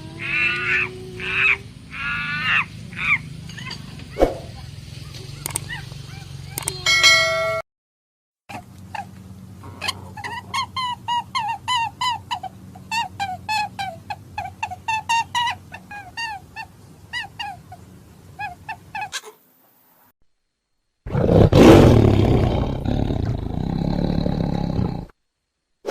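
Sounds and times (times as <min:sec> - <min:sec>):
animal high arched cries: 0:00.0 - 0:03.3, 0:08.9 - 0:19.4.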